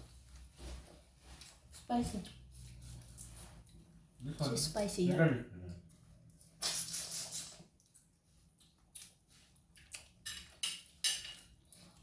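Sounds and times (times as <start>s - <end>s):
cutlery and dishes clicking: 10.2s - 11.5s.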